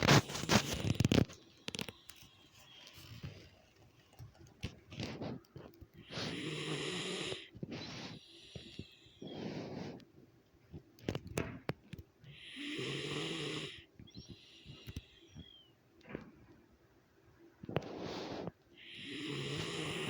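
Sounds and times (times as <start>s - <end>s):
person snoring: 6.0s - 7.5s, 12.3s - 13.9s, 18.8s - 20.0s
breath: 6.0s - 10.1s, 12.3s - 15.7s, 17.7s - 20.0s.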